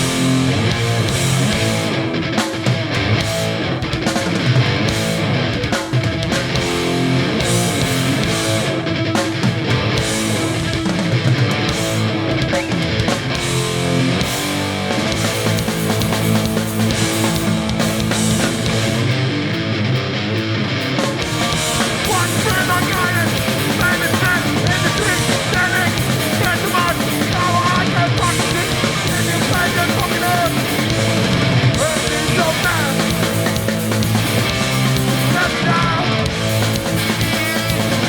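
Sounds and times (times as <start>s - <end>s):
punk band playing live: 0.0s - 38.0s.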